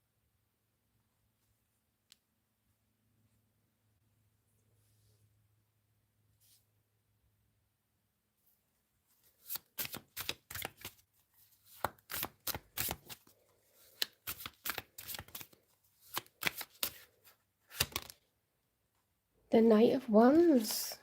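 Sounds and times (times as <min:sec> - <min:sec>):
cards being shuffled: 0:09.2 - 0:18.2.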